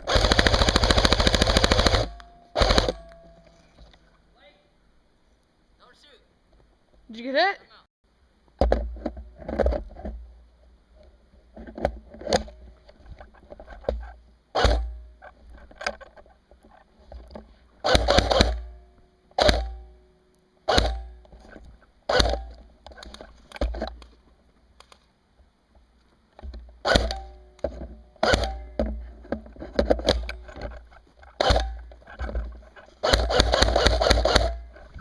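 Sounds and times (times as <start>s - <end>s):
rustling: 21.3s - 35.0s.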